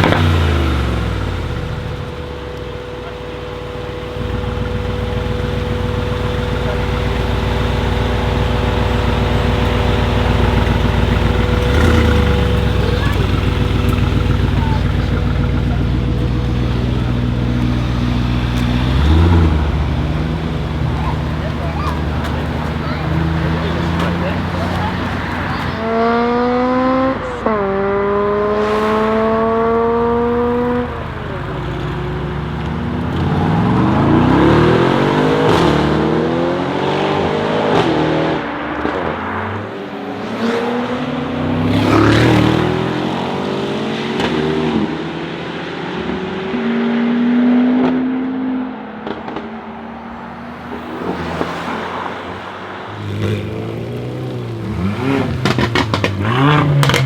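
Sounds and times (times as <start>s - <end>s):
exhaust cracks: 0.0s - 36.2s, 48.8s - 57.0s
car engine accelerating: 0.0s - 57.0s.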